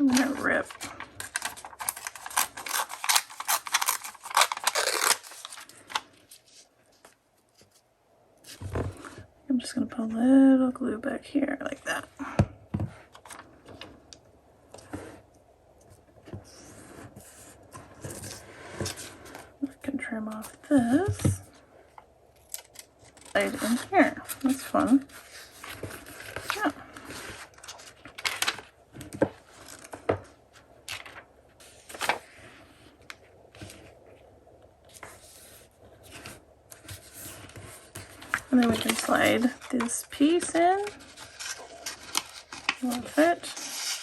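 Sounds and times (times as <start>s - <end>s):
paper rustling: 0.0s - 7.8s, 22.4s - 30.2s, 30.8s - 34.0s, 34.9s - 44.0s.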